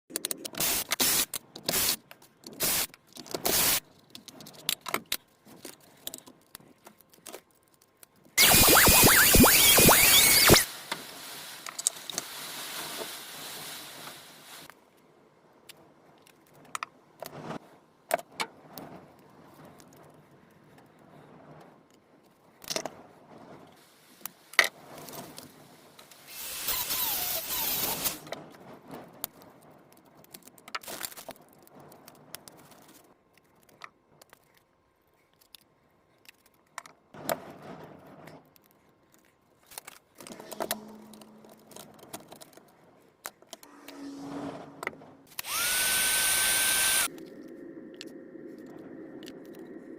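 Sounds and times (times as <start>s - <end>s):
hissing burst: 2.6s - 2.9s, 3.5s - 3.8s, 8.4s - 14.7s.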